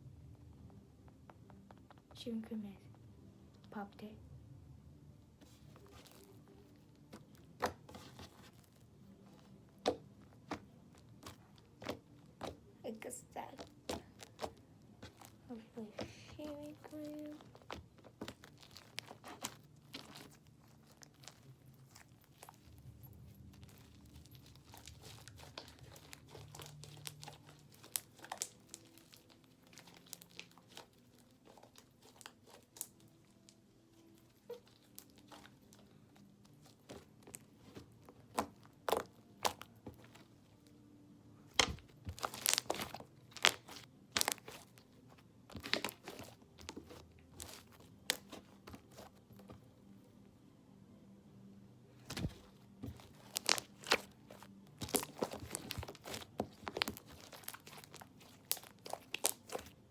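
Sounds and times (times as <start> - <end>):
slime squished by hand: 13.6 - 40.2, 41.5 - 49.6, 52.0 - 59.9.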